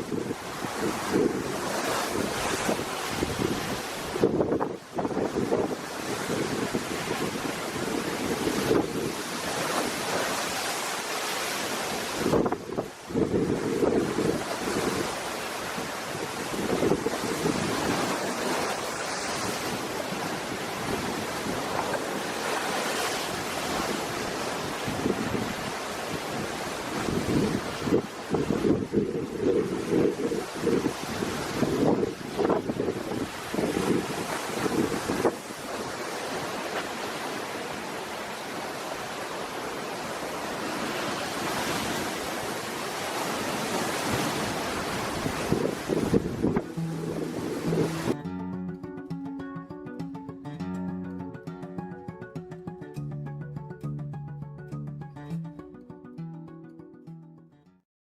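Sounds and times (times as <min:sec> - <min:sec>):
wind buffeting microphone: 0:00.0 - 0:10.4, 0:11.9 - 0:37.3, 0:40.6 - 0:48.2
waves breaking on shore: 0:00.0 - 0:48.3.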